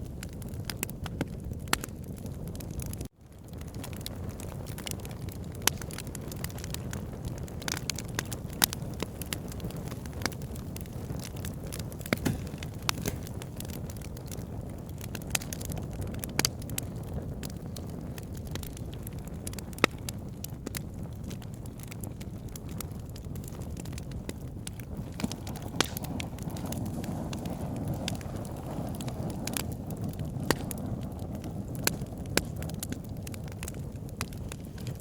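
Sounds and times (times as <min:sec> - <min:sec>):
low rumble of flames: 0:00.0 - 0:35.0
wood popping and snapping: 0:07.6 - 0:14.4, 0:23.4 - 0:27.5.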